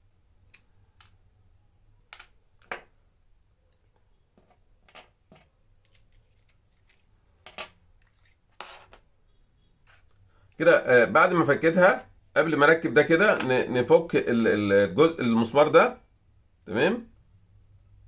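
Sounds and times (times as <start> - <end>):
screwdriver and metal parts clicking: 5.8 - 9.0.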